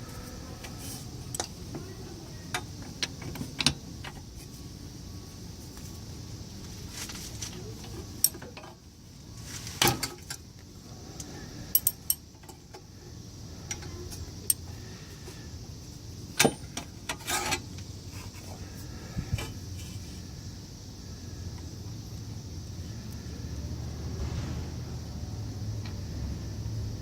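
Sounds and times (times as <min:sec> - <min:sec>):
low rumble: 0:23.9 - 0:26.5.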